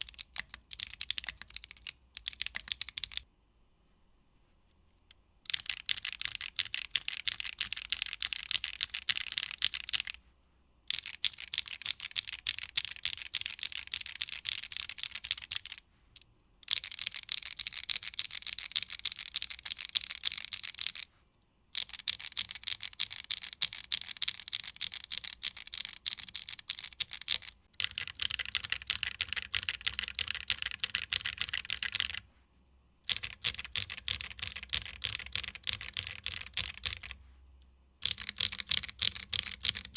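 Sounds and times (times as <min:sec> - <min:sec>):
fast mechanical keyboard typing: 0:00.0 - 0:03.2, 0:05.5 - 0:10.2, 0:10.9 - 0:15.8, 0:16.6 - 0:21.1, 0:21.7 - 0:32.2, 0:33.1 - 0:37.2, 0:38.0 - 0:39.9.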